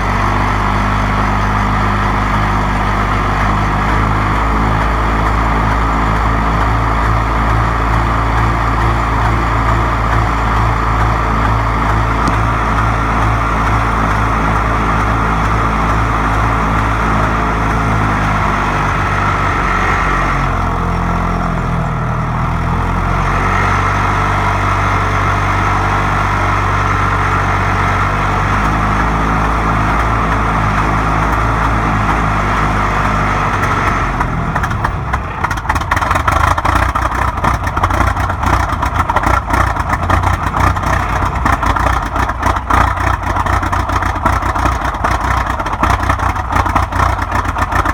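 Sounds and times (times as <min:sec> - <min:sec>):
crawler tractor engine running: 0:00.0 - 0:47.9
engine knocking: 0:00.0 - 0:47.9.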